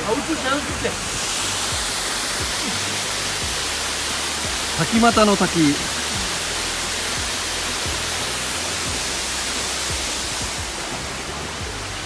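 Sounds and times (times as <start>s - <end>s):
waterfall pouring: 0.0s - 12.0s.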